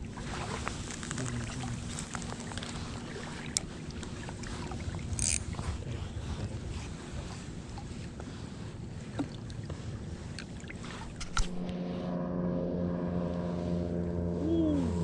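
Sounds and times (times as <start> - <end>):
wind rumbling on microphone: 0.0 - 15.0
steady engine drone: 9.6 - 15.0.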